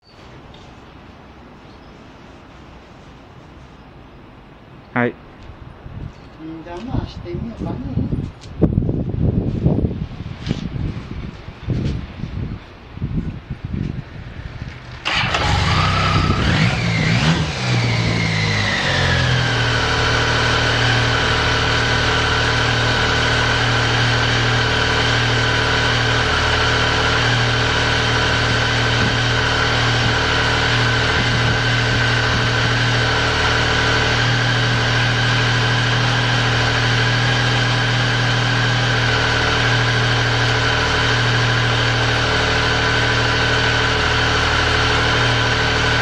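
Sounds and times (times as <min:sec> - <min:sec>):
wind buffeting microphone: 0:05.5 - 0:18.6, 0:30.0 - 0:32.8
motorcycle engine starting and idling: 0:14.3 - 0:46.0.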